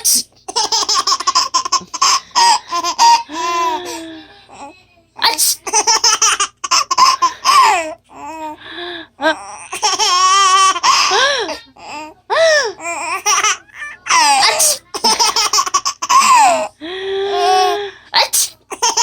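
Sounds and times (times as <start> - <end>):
baby laughing and squealing: 0.5 - 4.0.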